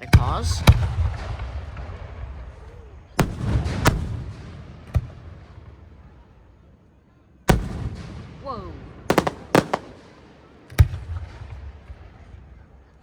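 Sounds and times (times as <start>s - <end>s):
fireworks shells bursting: 9.1s - 10.2s.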